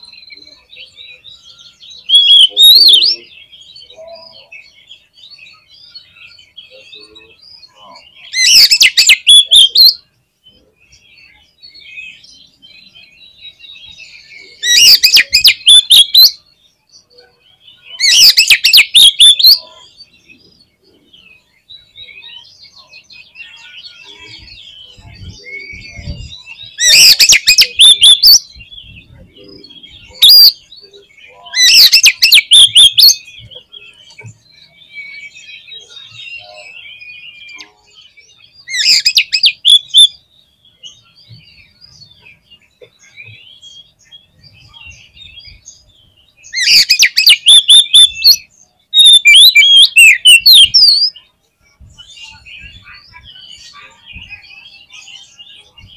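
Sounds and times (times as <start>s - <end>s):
magpie-robin singing: 0.0s - 55.9s
harsh rapid bird chattering: 31.5s - 33.2s, 49.0s - 51.1s.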